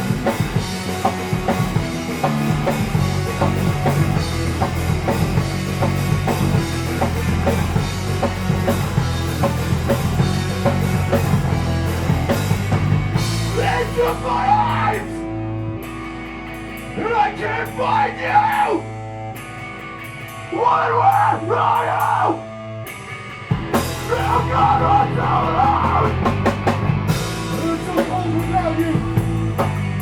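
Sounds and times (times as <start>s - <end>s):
drum kit beat: 0.0s - 15.0s, 23.5s - 30.0s
bass guitar: 0.0s - 30.0s
electric guitar: 0.0s - 30.0s.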